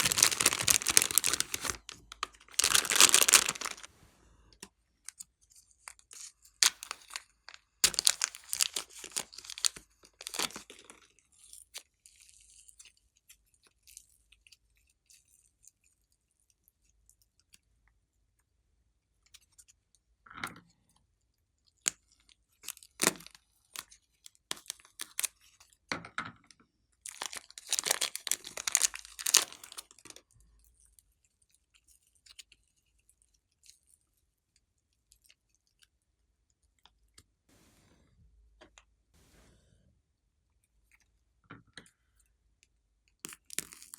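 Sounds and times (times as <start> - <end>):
slime squished by hand: 0.0 - 3.9, 7.8 - 10.7.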